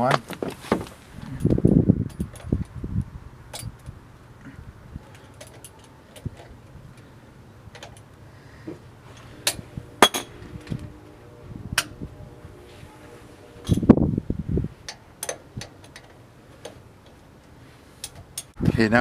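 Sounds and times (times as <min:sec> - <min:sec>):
steady low hum: 0:00.0 - 0:19.0
hand tools clinking on metal: 0:05.0 - 0:07.1.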